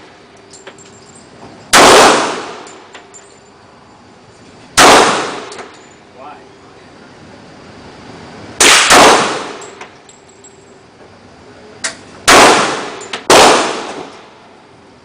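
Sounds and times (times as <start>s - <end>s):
pistol shots with ringing tail: 1.7s - 2.9s, 4.8s - 5.8s, 8.6s - 10.0s, 12.2s - 14.3s.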